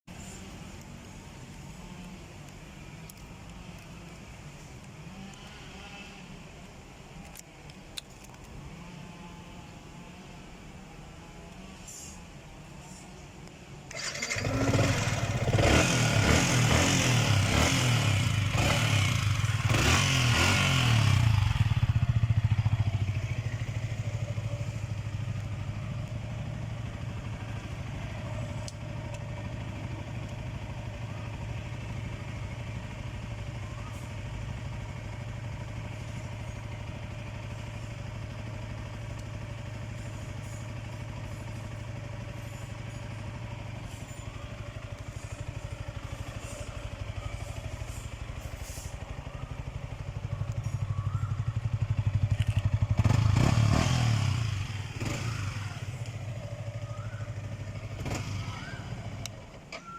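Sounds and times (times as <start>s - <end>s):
motorcycle engine idling: 12.8s - 59.9s.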